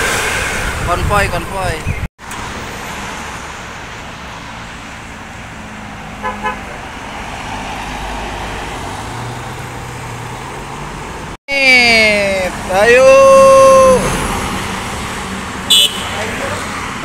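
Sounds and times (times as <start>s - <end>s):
road noise: 0.0s - 17.0s
bus engine hum: 8.0s - 17.0s
short horn beeps: 15.7s - 16.2s.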